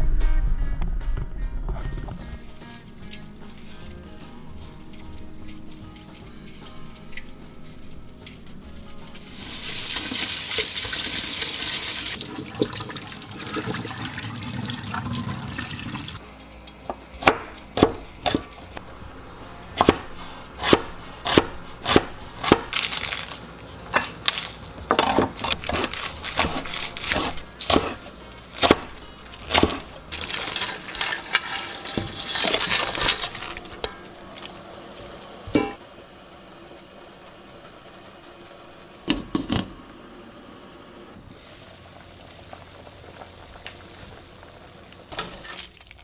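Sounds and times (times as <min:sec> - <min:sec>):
tap water running into sink: 0:09.6 - 0:16.2
water sloshing: 0:29.6 - 0:34.6.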